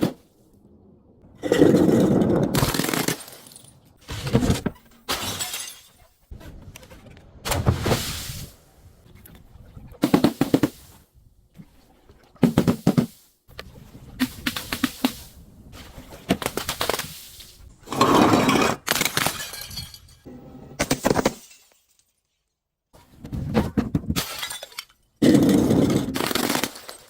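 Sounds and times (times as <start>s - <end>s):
glass crushing and shattering: 2.5s - 4.0s, 4.9s - 6.2s, 18.8s - 22.4s, 24.2s - 27.0s.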